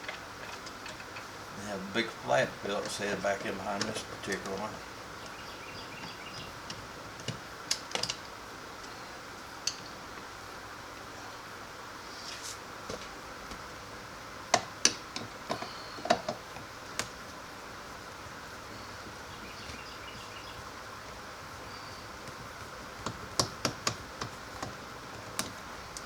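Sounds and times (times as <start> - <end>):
hand tools clicking on plastic trim: 2.8 - 4.7.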